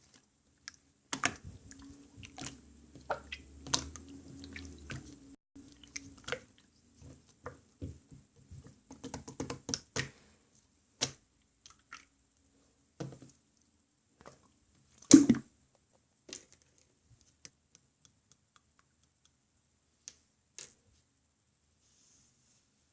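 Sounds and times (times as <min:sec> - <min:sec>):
loud slime pop: 0:15.1 - 0:15.5.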